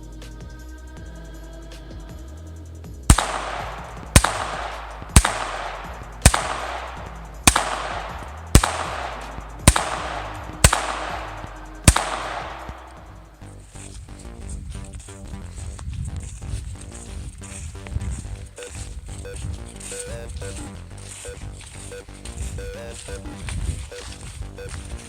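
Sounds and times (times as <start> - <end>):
handgun shots with echo: 3.1 - 12.9.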